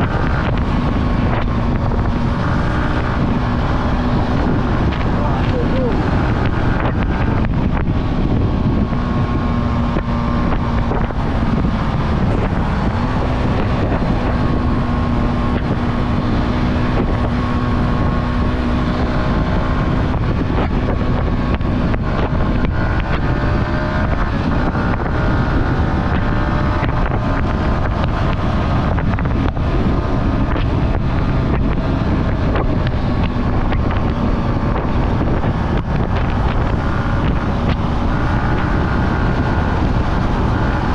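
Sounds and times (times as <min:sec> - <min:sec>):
motorcycle engine cruising: 0:00.0 - 0:40.9
wind rush on microphone: 0:00.0 - 0:40.9.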